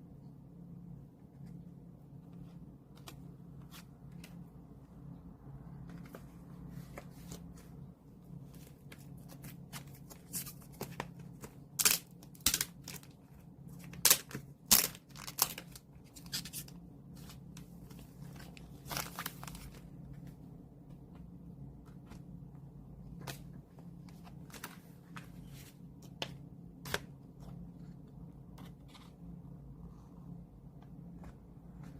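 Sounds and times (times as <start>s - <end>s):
steady low hum: 0.0s - 31.9s
packaging rustling and tearing: 13.8s - 16.7s, 18.3s - 19.8s.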